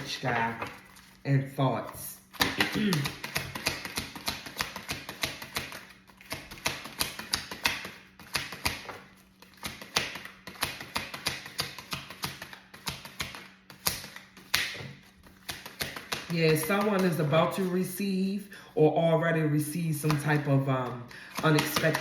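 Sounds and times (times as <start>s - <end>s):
cards being shuffled: 0.0s - 17.8s, 19.9s - 22.0s.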